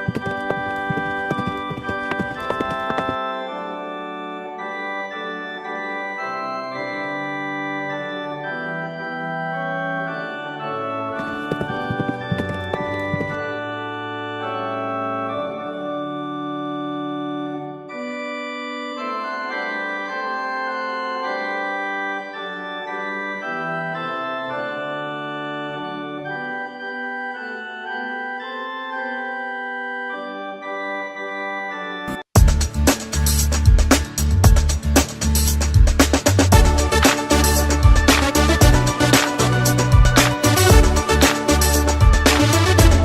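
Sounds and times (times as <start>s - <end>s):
electronic organ music: 36.5s - 43.0s.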